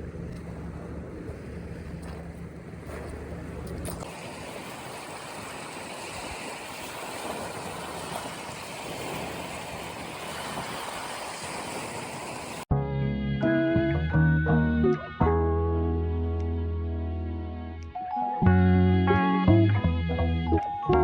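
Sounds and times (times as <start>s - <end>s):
rush of moving water: 0.0s - 12.7s.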